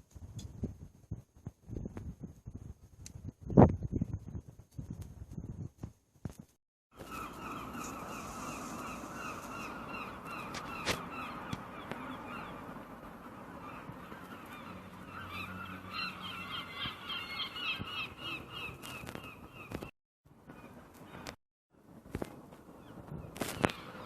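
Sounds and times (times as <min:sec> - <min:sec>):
flock of birds calling: 0:07.0 - 0:19.9.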